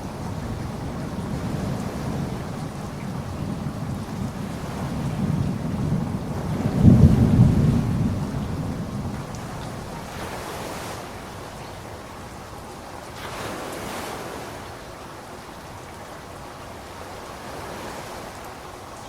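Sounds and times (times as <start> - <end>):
thunder rumble: 0.0 - 11.3
ocean surf washing on beach: 0.0 - 19.0.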